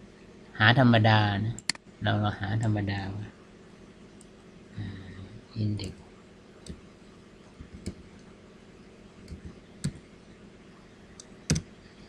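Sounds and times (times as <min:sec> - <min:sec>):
sharp computer clicks: 0:01.5 - 0:01.9, 0:07.6 - 0:08.3, 0:09.2 - 0:10.1, 0:11.2 - 0:11.8.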